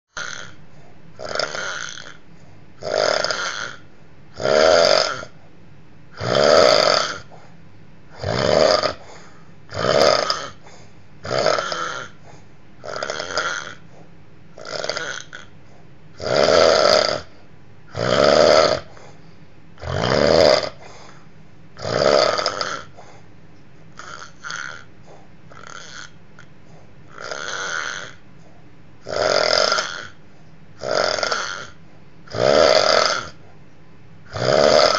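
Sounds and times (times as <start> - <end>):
person snoring heavily: 0.1 - 0.6, 1.2 - 2.2, 2.8 - 5.4, 6.2 - 7.4, 8.2 - 12.2, 12.8 - 13.9, 14.6 - 15.5, 16.2 - 19.0, 19.8 - 21.2, 21.8 - 23.0, 24.0 - 24.9, 25.5 - 26.5, 27.1 - 28.2, 29.0 - 30.2, 30.8 - 33.4, 34.3 - 34.9.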